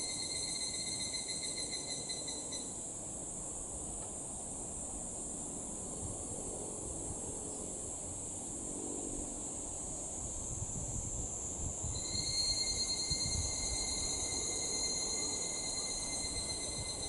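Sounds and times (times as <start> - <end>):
cicadas calling: 0.0 - 4.0, 9.2 - 17.0
high-pitched insect chorus: 0.0 - 17.0.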